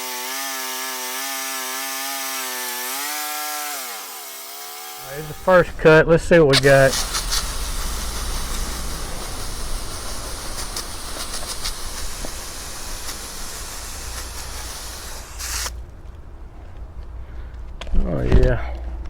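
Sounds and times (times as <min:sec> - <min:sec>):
sawmill blade hissing: 0:00.0 - 0:15.8
engine humming: 0:05.0 - 0:17.8.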